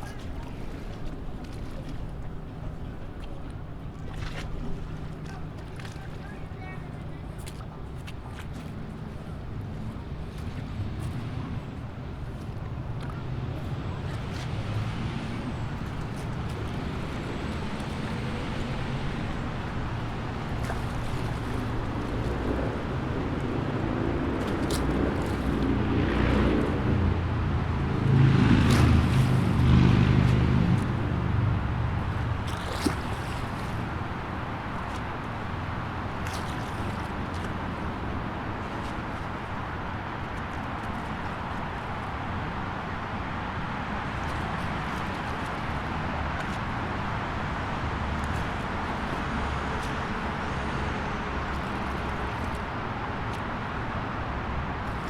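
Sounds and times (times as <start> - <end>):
vehicle engine rumbling: 9.8 - 40.2.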